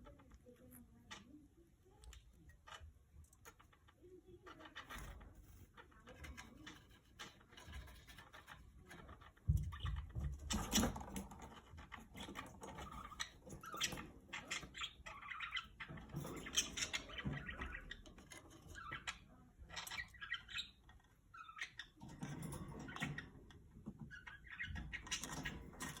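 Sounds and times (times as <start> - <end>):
parrot chirping and chattering: 0.0 - 26.0
small clicks and scratchy rustling: 0.0 - 26.0.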